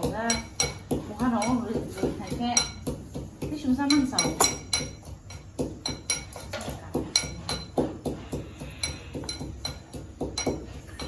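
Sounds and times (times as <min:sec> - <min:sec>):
cutlery clinking against dishes: 0:03.8 - 0:11.0.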